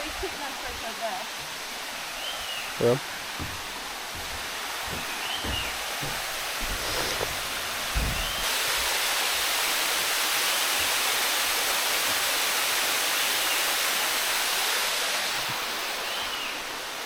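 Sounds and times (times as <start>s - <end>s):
water cascading over rocks: 0.0s - 17.0s
low thump: 3.4s - 8.5s.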